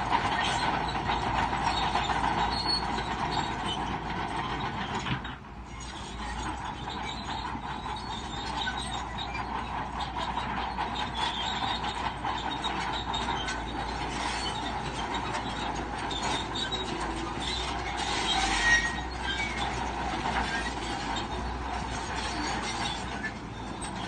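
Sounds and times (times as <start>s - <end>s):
bulldozer diesel engine: 0.0s - 24.0s
steel tracks clanking and squeaking: 0.0s - 24.0s
brief squeal: 16.2s - 19.8s.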